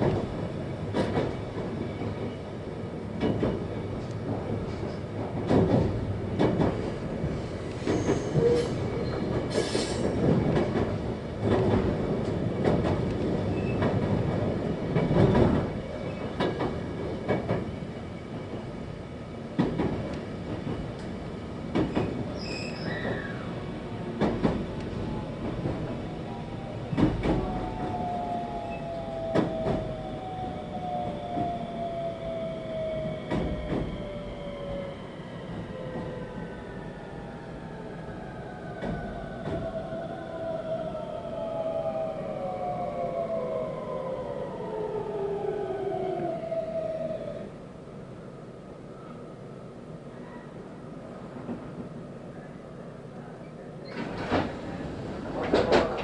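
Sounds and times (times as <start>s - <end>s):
train wheels rumbling on rail: 0.0s - 47.5s, 49.8s - 52.5s, 53.2s - 56.0s
clacks and knocks: 55.3s - 56.0s.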